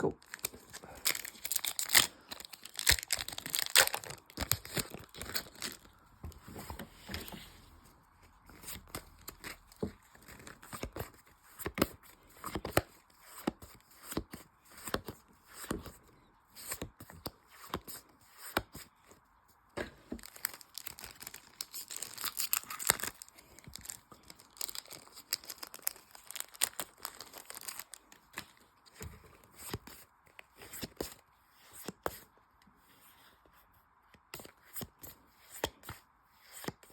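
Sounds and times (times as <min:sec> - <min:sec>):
foil wrappers ripping and crinkling: 0:00.2 - 0:05.9, 0:20.2 - 0:28.0
cards being handled: 0:00.2 - 0:07.6, 0:19.8 - 0:32.2.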